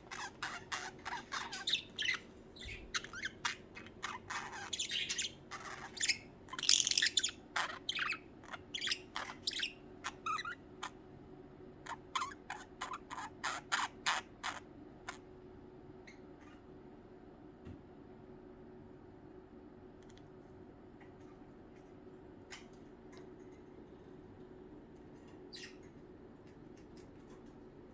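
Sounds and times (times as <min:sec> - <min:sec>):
budgerigars chirping: 0:00.0 - 0:11.0, 0:11.8 - 0:15.2, 0:25.5 - 0:25.8.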